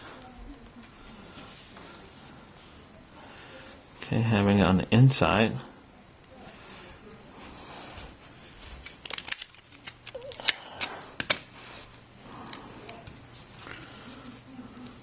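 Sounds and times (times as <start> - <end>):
light rustling of tape: 0.0 - 4.0, 6.0 - 15.0
sharp clicks of small parts: 8.8 - 11.4.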